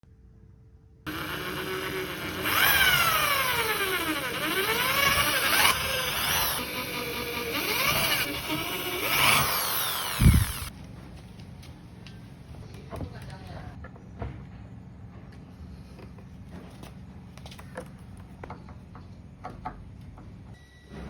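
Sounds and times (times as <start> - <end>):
power drill motor whining: 1.1 - 10.7.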